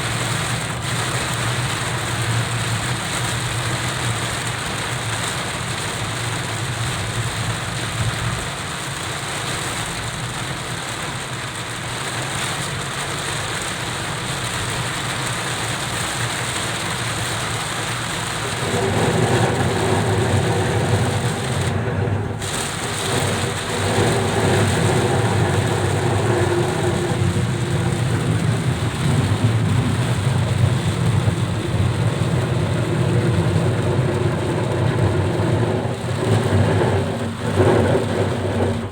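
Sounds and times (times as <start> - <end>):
car engine and road noise: 0.0 - 38.9
heavy rain beating on a car: 0.0 - 38.9
low rumble: 18.1 - 38.9.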